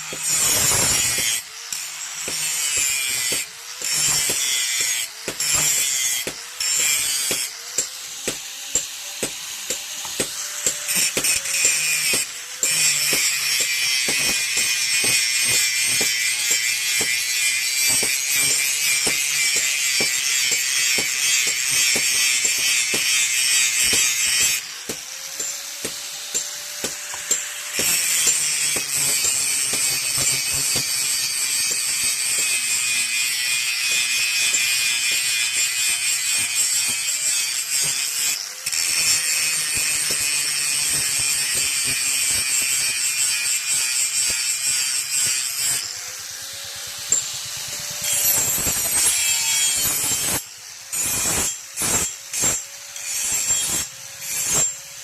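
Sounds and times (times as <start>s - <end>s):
knife on grinding wheel: 43.9s - 54.8s.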